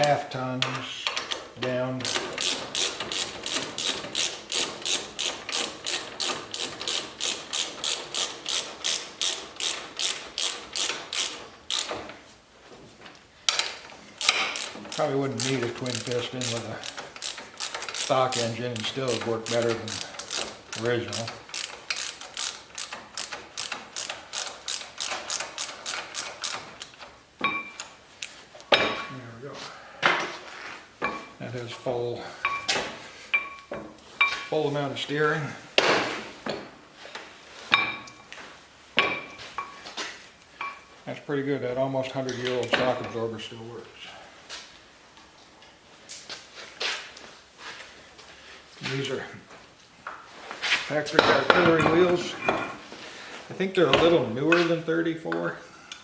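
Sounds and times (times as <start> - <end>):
ratchet wrench clicking: 2.0 - 12.1, 13.5 - 27.0.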